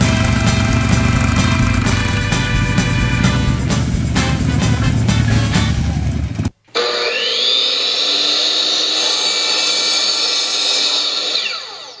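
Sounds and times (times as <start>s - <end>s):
power tool whine: 6.0s - 12.0s.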